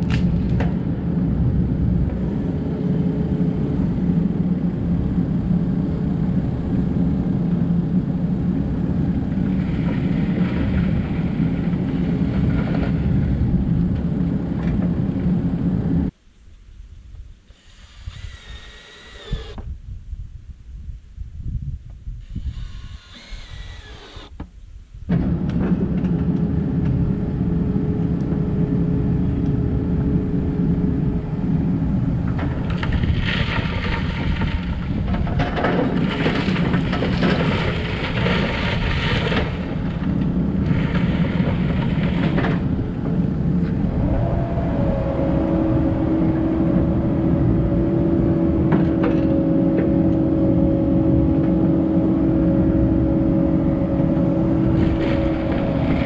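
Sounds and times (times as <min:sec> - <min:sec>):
harsh hissing and scraping: 0:17.4 - 0:19.6, 0:22.2 - 0:24.3
excavator diesel engine running: 0:25.2 - 0:56.0.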